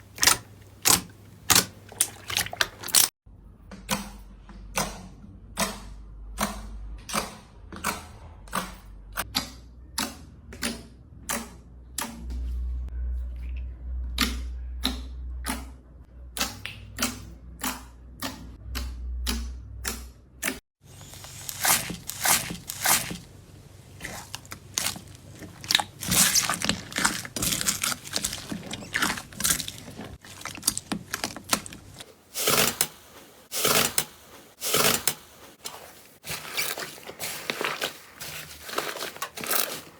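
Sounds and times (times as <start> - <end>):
slime crackling and popping: 21.0 - 23.2, 24.0 - 32.0.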